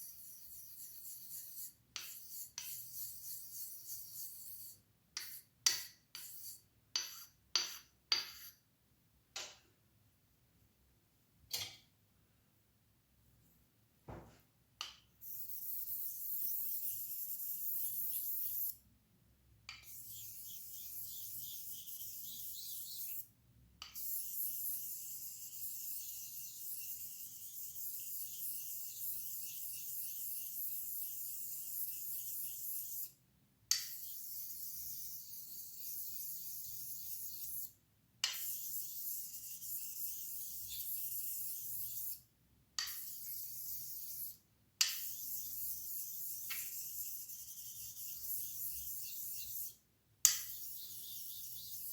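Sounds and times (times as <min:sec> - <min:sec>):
razor scraping on whetstone: 0:00.0 - 0:08.6, 0:15.2 - 0:18.8, 0:19.9 - 0:23.3, 0:24.0 - 0:33.2, 0:33.9 - 0:37.7, 0:38.4 - 0:42.2, 0:45.0 - 0:51.9.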